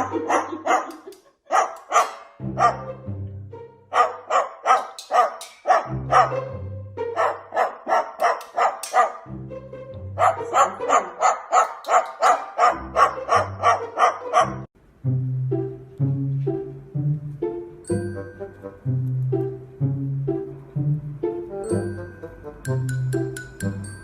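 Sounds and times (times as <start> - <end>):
rapid dog-like barks: 0.0 - 3.0, 3.9 - 6.5, 7.1 - 9.3, 10.2 - 14.7
background music: 0.0 - 24.0.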